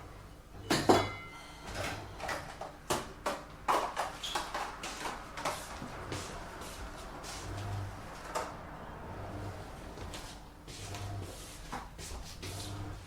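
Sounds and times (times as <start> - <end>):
dishes clinking: 0.6 - 2.8.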